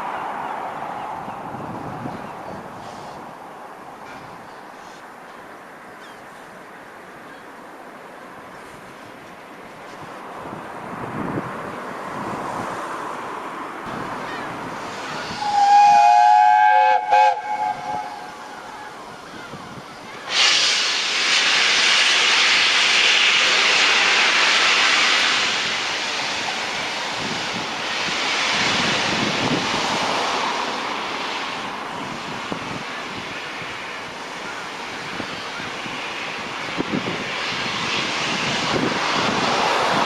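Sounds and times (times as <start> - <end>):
loud steam hissing: 2.6 - 3.4, 13.9 - 40.0
steam locomotive whistle: 15.2 - 18.9.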